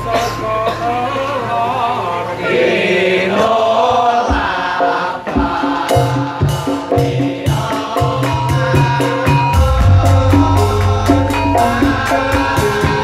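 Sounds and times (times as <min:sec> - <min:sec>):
voices singing chant-like melody: 0:00.0 - 0:13.0
drum strikes: 0:03.4 - 0:13.0
held tone: 0:09.5 - 0:13.0.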